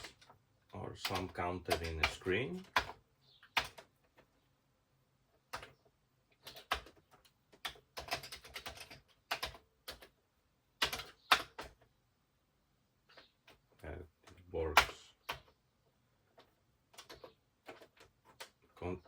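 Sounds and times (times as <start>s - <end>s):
computer keyboard clicks: 6.4s - 10.1s.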